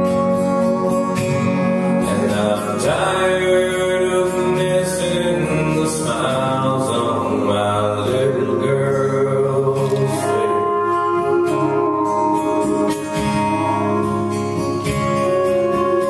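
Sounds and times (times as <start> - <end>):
man singing long notes: 0.0 - 14.3
guitar accompaniment: 0.0 - 16.0.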